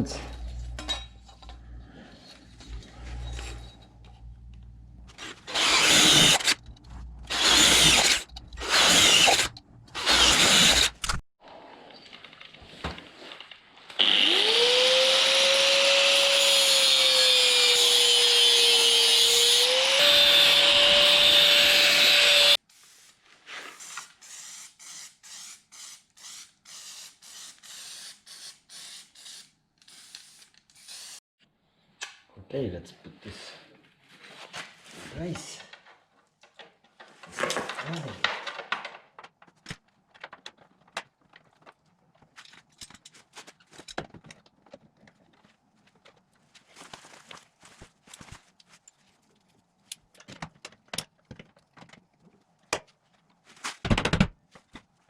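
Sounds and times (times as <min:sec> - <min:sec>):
electric drill boring steel: 0:05.4 - 0:06.6, 0:07.3 - 0:11.1, 0:14.0 - 0:22.6.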